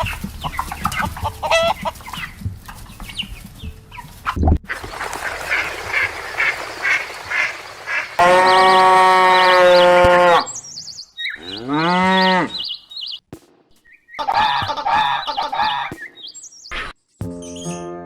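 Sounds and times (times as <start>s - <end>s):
small birds chirping: 0.0s - 17.8s
cow mooing: 11.4s - 12.6s.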